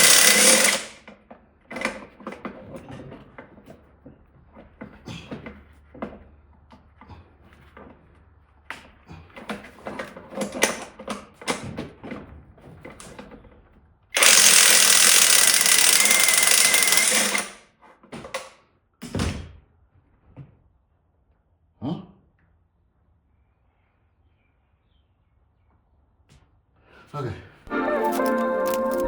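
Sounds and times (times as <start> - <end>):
metal tools clicking and knocking: 0.0 - 1.0, 14.2 - 17.6, 28.0 - 29.0
power tool running: 0.0 - 1.0, 14.2 - 17.6, 27.7 - 29.0.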